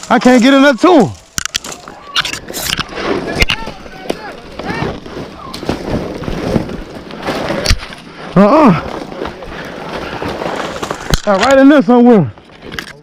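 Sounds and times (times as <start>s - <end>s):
brush crackling and rustling: 0.0s - 12.9s.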